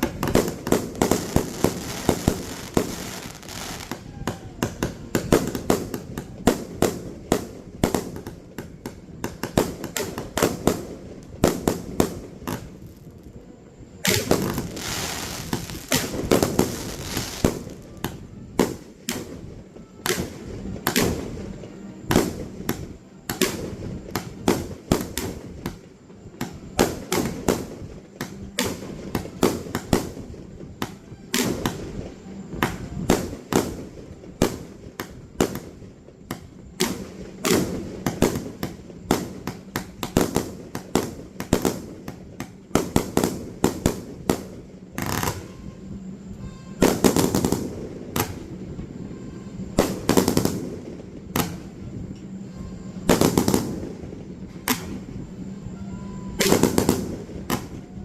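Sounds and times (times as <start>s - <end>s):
fireworks bursting: 0.0s - 58.0s.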